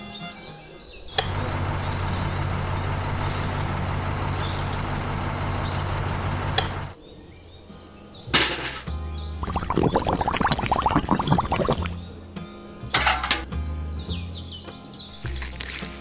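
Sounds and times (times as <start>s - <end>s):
heavy truck engine running: 1.1s - 7.0s
hiss: 1.2s - 6.9s.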